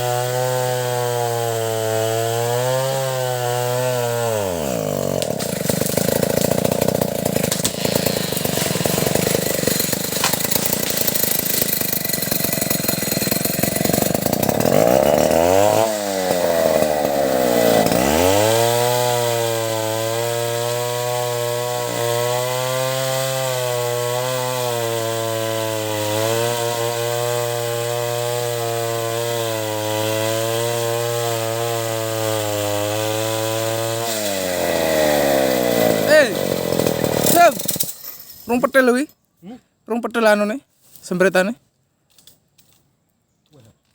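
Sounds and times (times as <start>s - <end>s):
chainsaw cutting into wood: 0.0s - 39.0s.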